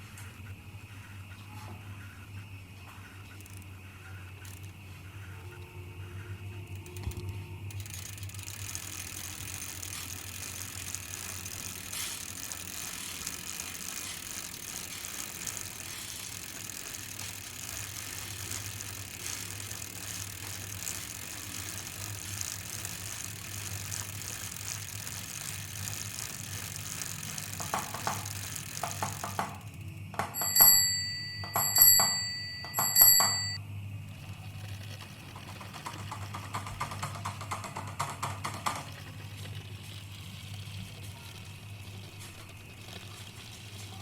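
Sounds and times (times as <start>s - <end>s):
steady low hum: 0.0s - 44.0s
bicycle freewheel ticking: 3.0s - 44.0s
rattling knocks: 27.5s - 30.8s, 35.4s - 39.1s.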